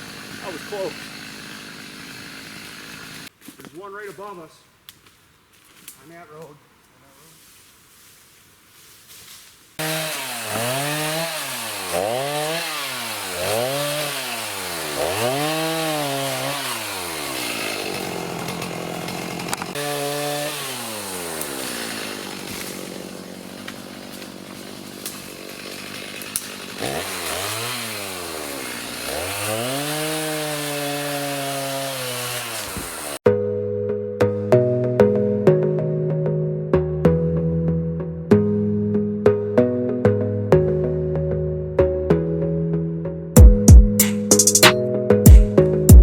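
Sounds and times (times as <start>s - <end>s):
chainsaw revving and cutting: 0.0s - 3.3s, 9.8s - 33.2s.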